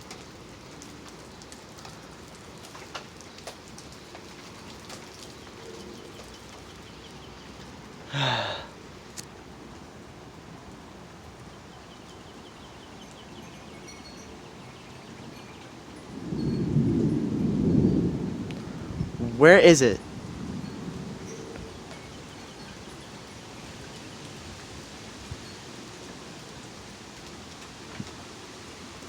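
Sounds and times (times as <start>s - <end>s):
heavy rain hissing: 3.8s - 9.1s, 18.5s - 21.2s.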